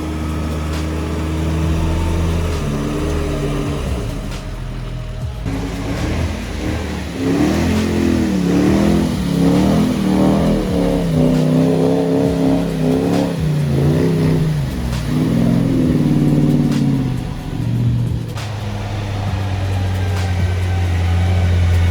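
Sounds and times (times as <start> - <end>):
engine revving: 0.0 - 21.9.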